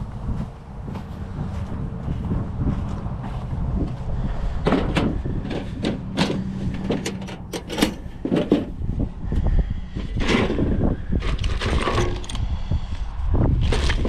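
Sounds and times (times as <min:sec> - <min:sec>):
wind rumble on microphone: 0:00.0 - 0:14.0
gear rattling and knocking: 0:04.6 - 0:08.8, 0:11.3 - 0:12.4.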